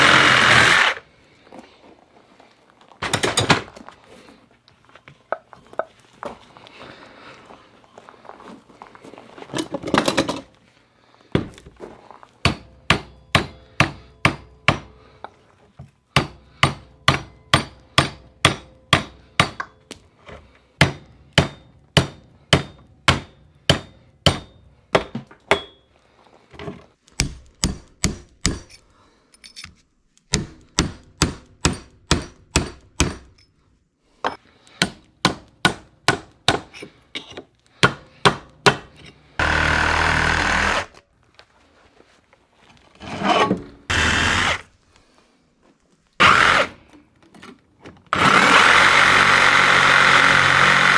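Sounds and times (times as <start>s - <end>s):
hammer striking metal: 12.4s - 14.9s, 16.2s - 19.8s, 20.8s - 25.8s, 27.2s - 28.8s, 30.3s - 33.5s.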